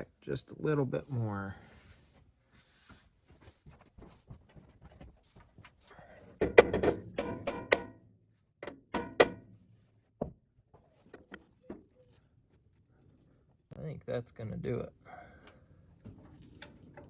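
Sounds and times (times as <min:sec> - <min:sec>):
hammer striking metal: 0:07.1 - 0:08.0, 0:08.9 - 0:09.5.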